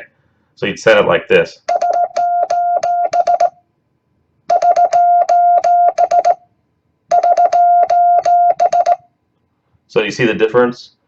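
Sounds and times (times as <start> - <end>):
morse code beeps: 1.7 - 3.6, 4.5 - 6.5, 7.1 - 9.1.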